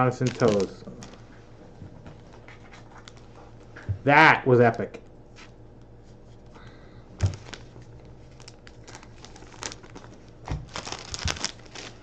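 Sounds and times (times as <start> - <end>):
plastic wrappers crinkling: 0.0 - 1.4, 2.8 - 3.4, 7.2 - 12.0
faint steady hum: 0.0 - 12.0.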